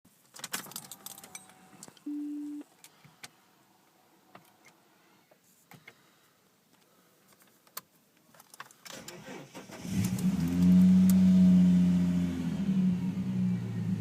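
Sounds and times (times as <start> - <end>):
electronic dashboard beep: 2.1 - 2.6.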